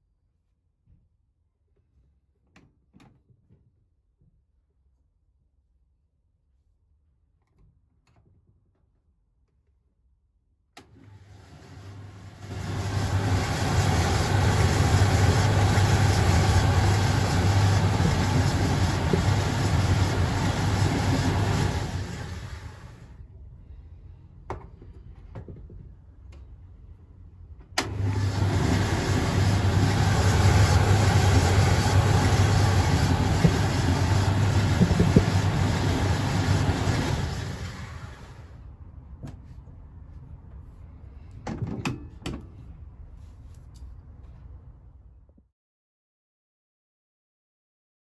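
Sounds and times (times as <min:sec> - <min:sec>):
tumble dryer motor hum: 0:10.8 - 0:23.2, 0:27.8 - 0:38.5
dryer rushing noise: 0:10.9 - 0:23.1, 0:27.8 - 0:38.5.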